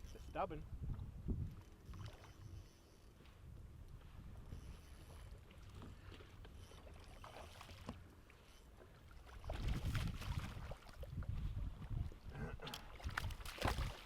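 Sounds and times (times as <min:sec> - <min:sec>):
water around a boat: 0:00.0 - 0:14.0
wind rumble: 0:00.6 - 0:01.7, 0:09.5 - 0:14.0.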